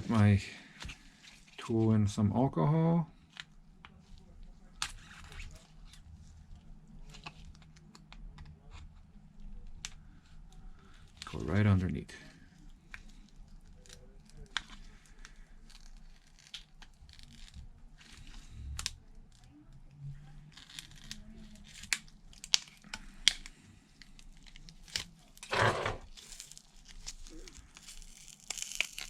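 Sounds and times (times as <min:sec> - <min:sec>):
adhesive peeling and tearing: 0:12.4 - 0:29.0.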